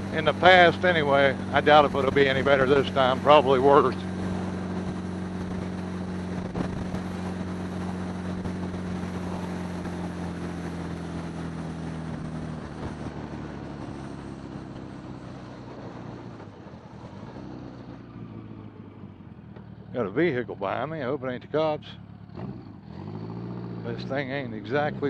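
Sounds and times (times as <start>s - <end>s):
motorcycle engine cruising: 0.0s - 25.0s
wind rushing over microphone: 1.4s - 13.8s.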